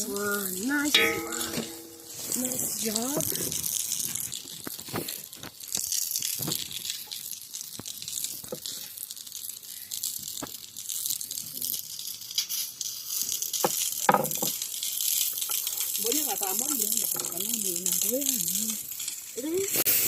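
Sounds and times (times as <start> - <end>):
oil sizzling: 0.0 - 20.0
small pops and clicks: 3.5 - 16.0.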